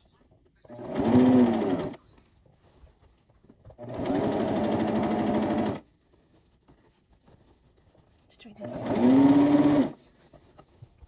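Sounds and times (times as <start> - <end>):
sewing machine stitching: 0.6 - 2.1, 3.7 - 5.9, 8.6 - 10.1.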